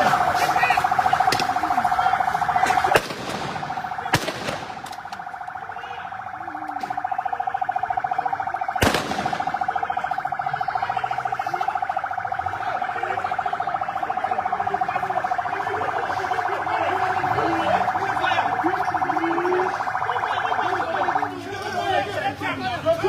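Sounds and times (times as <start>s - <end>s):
warbling siren: 0.0s - 23.0s
sharp cracks: 2.6s - 5.7s, 8.8s - 9.8s.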